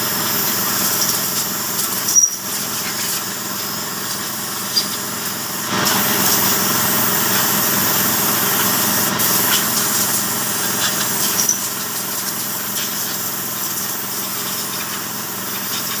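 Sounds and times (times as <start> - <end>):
small motor running with hiss: 0.0 - 16.0.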